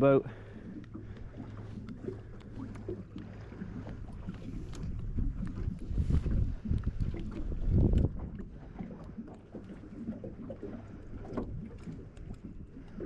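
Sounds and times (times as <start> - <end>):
wind buffeting microphone: 1.0 - 9.3.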